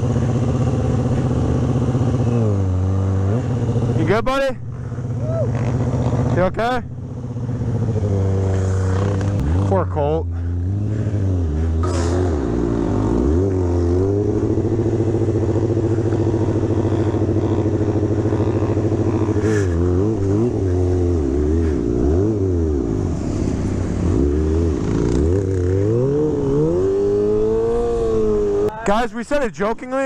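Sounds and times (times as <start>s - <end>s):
motorcycle engine revving: 0.0s - 28.8s.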